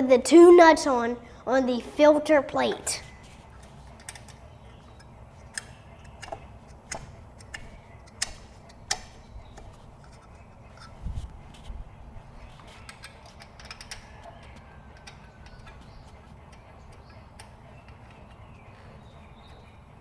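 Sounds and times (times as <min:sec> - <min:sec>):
hand tools clicking and tapping: 0:03.6 - 0:11.0, 0:12.7 - 0:18.4.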